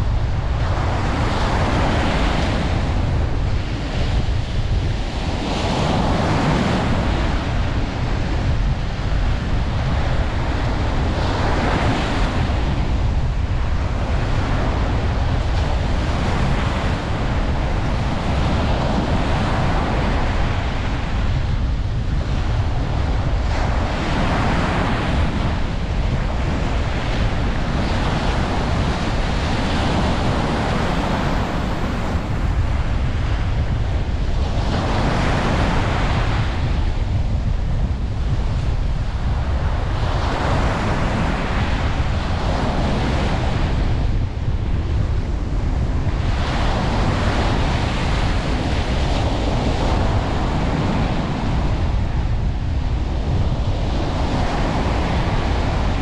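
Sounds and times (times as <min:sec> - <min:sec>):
ocean waves breaking on beach: 0:00.0 - 0:56.0
wind buffeting microphone: 0:00.0 - 0:56.0.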